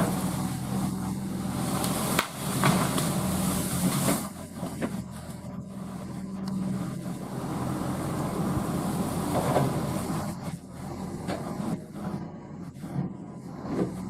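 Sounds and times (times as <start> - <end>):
excavator diesel engine running: 0.0 - 14.0
sharp cracks and knocks: 1.8 - 3.2.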